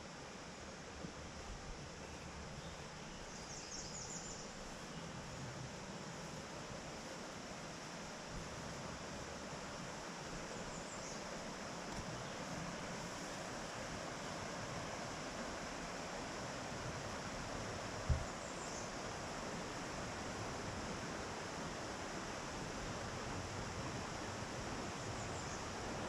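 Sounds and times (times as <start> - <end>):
steady rushing outdoor noise: 0.0 - 26.0
low thump: 18.1 - 18.3.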